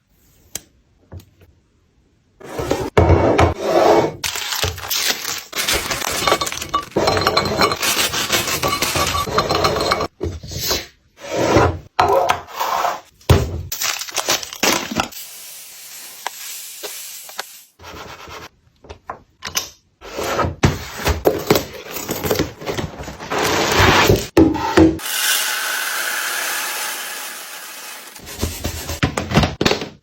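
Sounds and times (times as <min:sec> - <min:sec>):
food containers clattering: 0:04.3 - 0:10.1.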